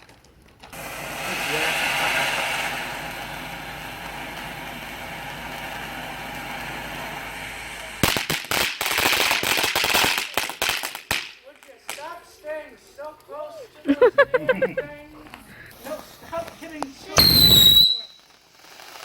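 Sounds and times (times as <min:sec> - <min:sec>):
firework hissing: 0:00.6 - 0:11.3, 0:15.6 - 0:19.0
crackling pops: 0:08.0 - 0:12.2, 0:15.3 - 0:19.0.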